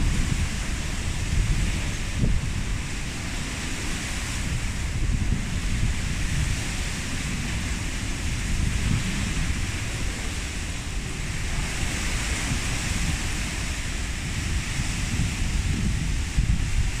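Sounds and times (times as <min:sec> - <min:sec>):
strong wind hissing: 0:00.0 - 0:17.0
wind buffeting microphone: 0:00.0 - 0:17.0.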